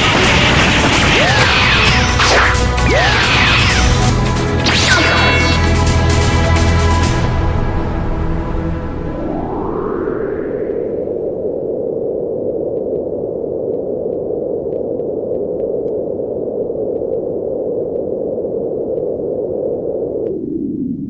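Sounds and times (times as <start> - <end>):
low rushing rumble: 0.0 - 12.4
faint crackles: 10.5 - 21.0.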